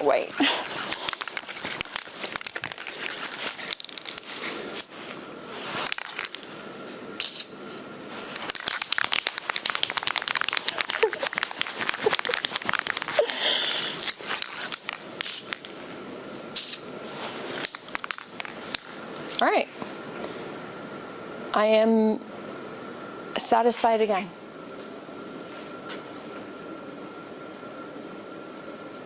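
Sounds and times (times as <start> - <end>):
spray can crinkling: 0.4 - 6.5, 7.2 - 7.5, 8.2 - 15.8, 16.6 - 16.8, 17.6 - 18.9
spray paint hissing: 7.2 - 7.5, 8.2 - 15.5, 16.6 - 16.8.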